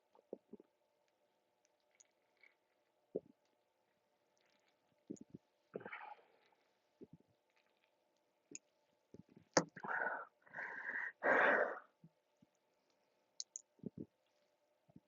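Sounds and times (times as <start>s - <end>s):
person breathing out hard: 9.8s - 11.8s.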